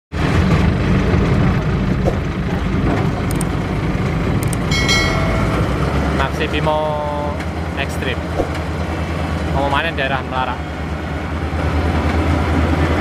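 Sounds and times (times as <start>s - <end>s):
combine harvester engine rumble: 0.2s - 13.0s
brief high tone: 4.7s - 6.2s.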